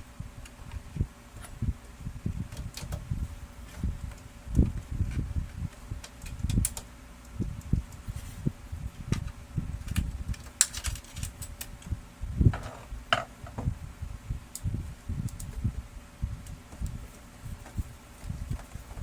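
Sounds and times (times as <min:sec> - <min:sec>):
faint steady hum: 0:00.0 - 0:19.0
hands knocking and clicking parts: 0:12.5 - 0:13.7.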